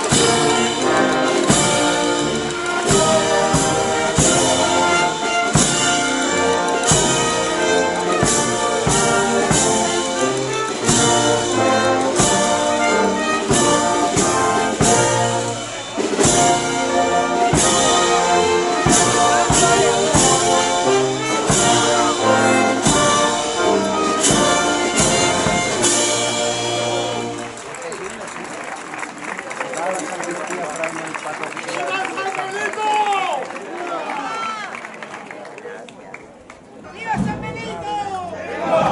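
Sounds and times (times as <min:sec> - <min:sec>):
brass band playing a march: 0:00.0 - 0:28.1.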